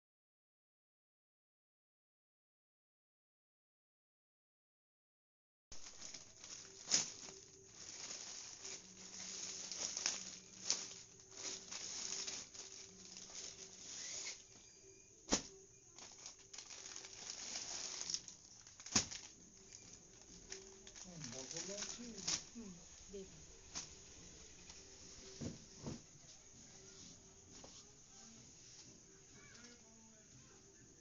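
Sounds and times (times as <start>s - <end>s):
packaging rustling and crinkling: 5.8s - 14.7s, 15.3s - 26.1s.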